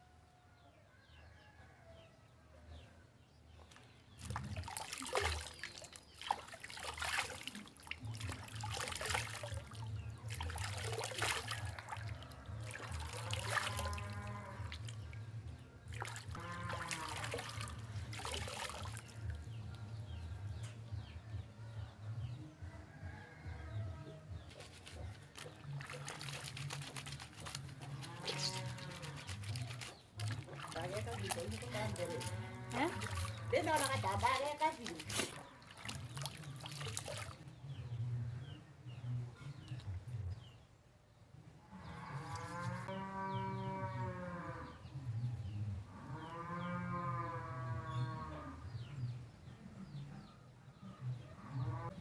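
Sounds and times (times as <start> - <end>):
small birds chirping: 3.4 - 22.4, 23.3 - 40.7
cow mooing: 13.0 - 14.9, 16.4 - 17.9, 27.9 - 29.7, 31.6 - 34.0, 41.7 - 44.8, 45.9 - 48.6
farm animal bleating: 13.2 - 14.9, 16.4 - 17.6, 27.8 - 29.8, 31.0 - 34.8.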